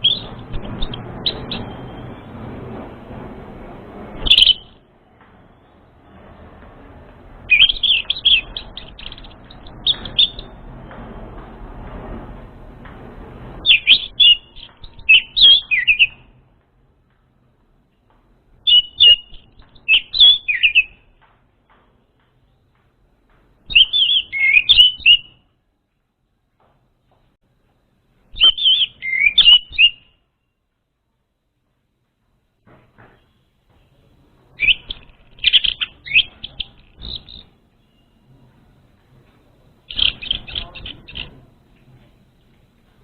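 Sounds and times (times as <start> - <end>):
thrush whistling song: 0.0 - 2.7, 4.2 - 4.8, 7.5 - 10.6, 13.6 - 16.3, 18.6 - 21.0, 23.7 - 25.4, 28.3 - 30.6, 34.6 - 38.3, 39.9 - 41.5.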